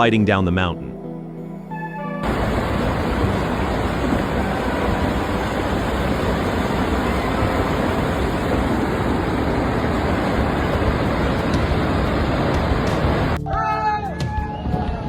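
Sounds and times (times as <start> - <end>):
loud low rumbling rush: 2.2 - 13.4.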